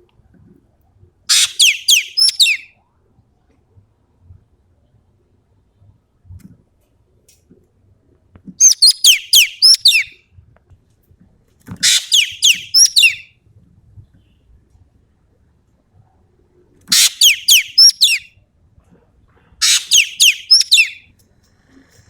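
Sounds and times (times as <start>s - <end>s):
bird singing sharp falling notes: 11.9s - 13.2s, 19.7s - 21.0s.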